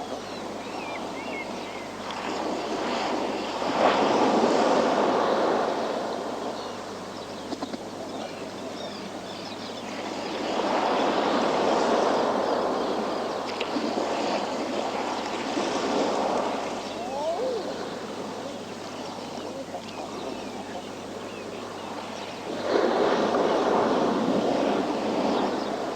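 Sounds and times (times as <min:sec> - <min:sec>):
waves washing against rocks: 0:10.4 - 0:19.2, 0:22.5 - 0:25.9.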